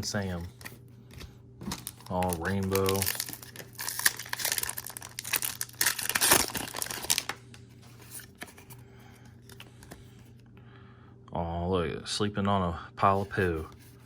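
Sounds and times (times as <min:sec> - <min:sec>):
card pack crinkling and rustling: 0:00.0 - 0:10.1, 0:13.1 - 0:14.0.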